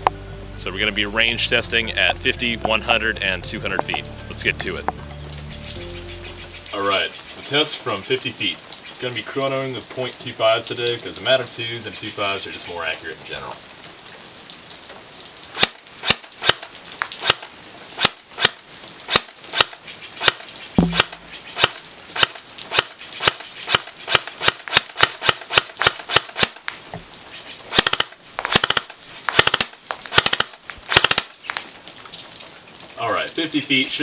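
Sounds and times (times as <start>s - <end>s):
airsoft gun shots: 15.6s - 16.6s, 17.2s - 17.4s, 18.0s - 26.6s, 27.7s - 31.3s
dull thump: 20.8s - 21.3s.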